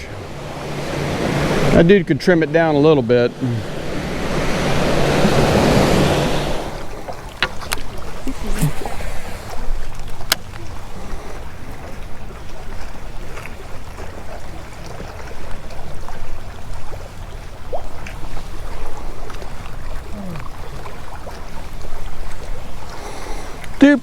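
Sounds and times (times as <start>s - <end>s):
steady low rumble: 0.0s - 9.9s
water lapping against boat hull: 0.0s - 24.0s.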